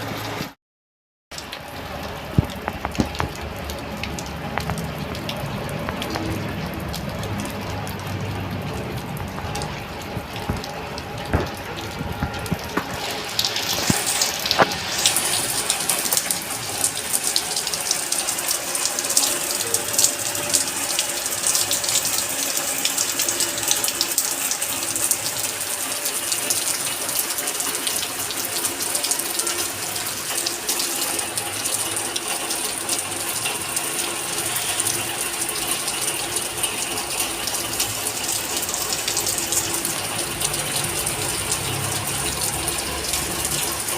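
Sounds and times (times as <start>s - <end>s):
rain pattering on hard surfaces: 0.0s - 0.5s, 1.3s - 43.9s.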